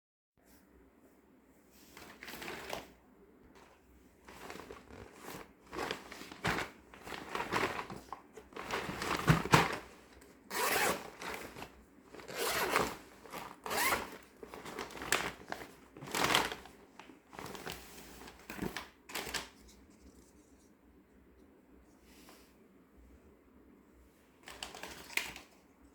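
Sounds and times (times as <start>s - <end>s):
toy packaging crinkling and ripping: 10.5s - 16.8s.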